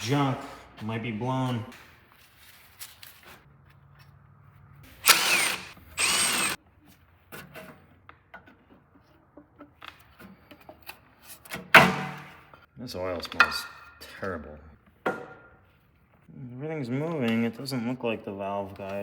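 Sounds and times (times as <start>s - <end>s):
power drill whirring: 4.9s - 6.6s.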